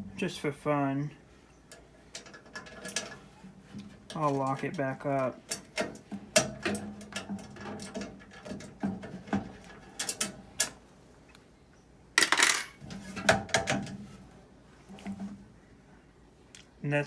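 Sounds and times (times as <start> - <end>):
metal clatter: 1.7 - 10.8, 12.2 - 14.0
metal lock clicks and clinks: 10.0 - 10.8.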